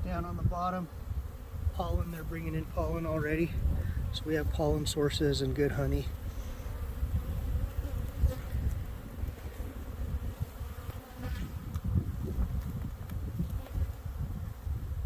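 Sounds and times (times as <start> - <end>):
honeybees buzzing: 0.0 - 15.0
bee flying close by: 5.7 - 15.0.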